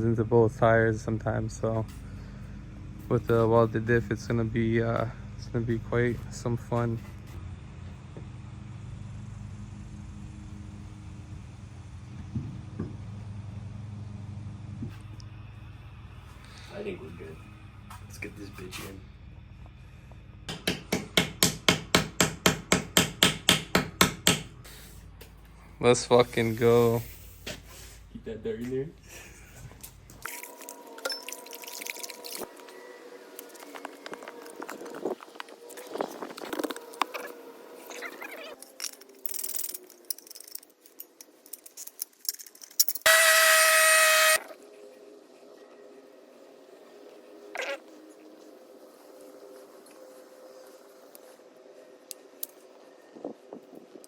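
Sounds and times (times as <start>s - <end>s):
clinks of hand tools and metal: 38.6s - 43.1s
power tool whining: 43.1s - 44.6s.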